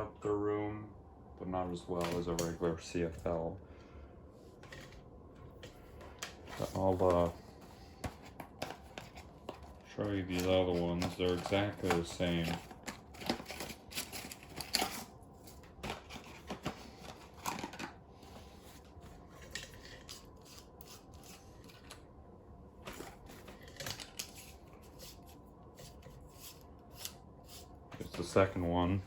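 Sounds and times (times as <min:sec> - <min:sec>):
hands handling light bulbs: 0:04.6 - 0:18.0.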